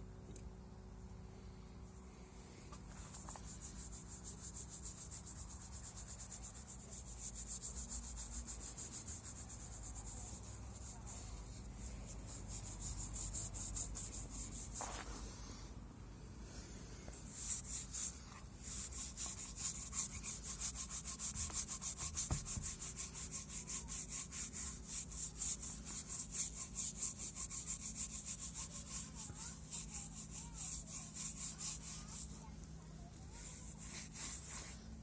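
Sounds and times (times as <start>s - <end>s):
hand tool strokes on wood: 2.7s - 15.5s, 16.5s - 35.0s.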